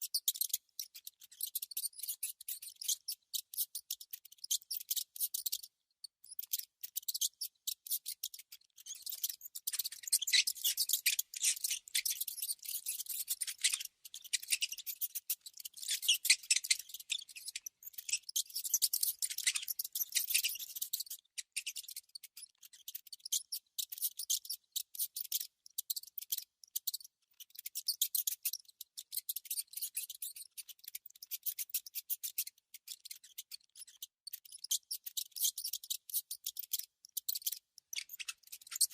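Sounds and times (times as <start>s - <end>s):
mouse scratching and gnawing: 6.5s - 25.5s.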